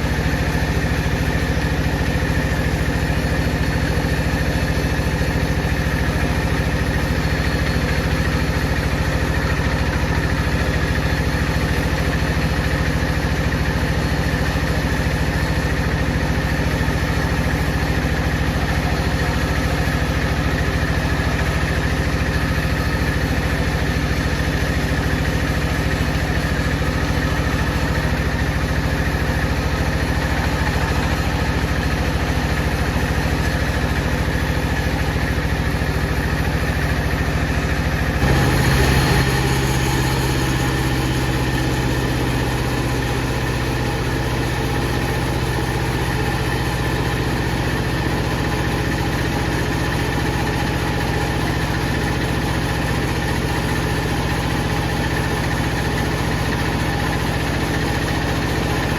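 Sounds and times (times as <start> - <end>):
bandsaw machinery humming: 37.8 - 49.0.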